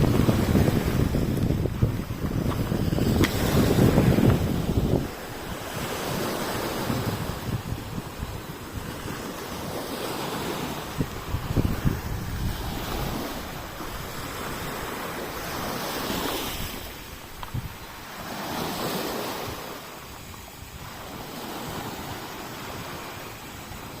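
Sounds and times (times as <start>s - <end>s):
ocean waves washing ashore: 0.0s - 24.0s
wind buffeting microphone: 0.0s - 24.0s.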